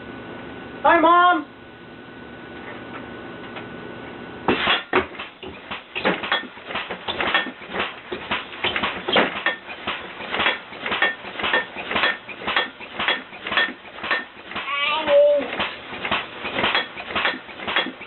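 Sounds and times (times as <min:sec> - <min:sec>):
metallic banging clatter: 0:04.5 - 0:14.7.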